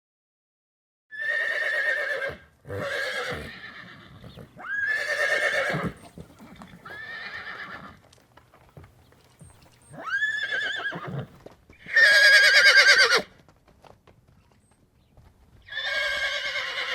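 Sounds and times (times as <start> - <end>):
horse neighing: 1.1 - 8.0, 9.8 - 13.3, 15.7 - 16.9.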